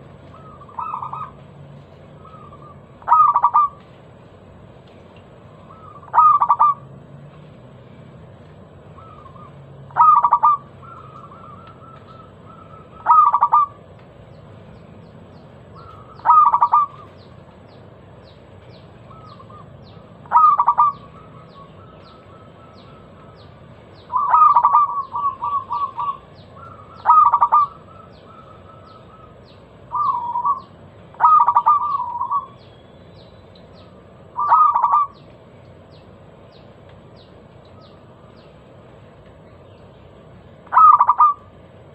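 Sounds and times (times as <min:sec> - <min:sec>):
dove cooing: 0:00.0 - 0:01.5, 0:02.1 - 0:03.8, 0:05.6 - 0:06.9, 0:08.9 - 0:13.9, 0:15.7 - 0:17.2, 0:19.0 - 0:32.6, 0:34.3 - 0:35.2, 0:40.6 - 0:41.6.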